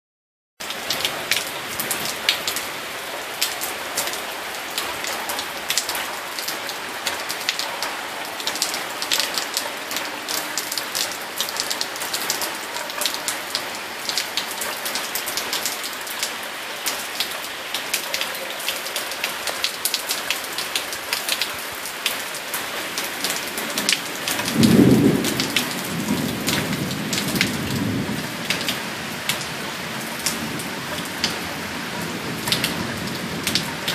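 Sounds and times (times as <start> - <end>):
steady rainfall: 0.6 - 33.9
low rumble of thunder: 24.2 - 30.7.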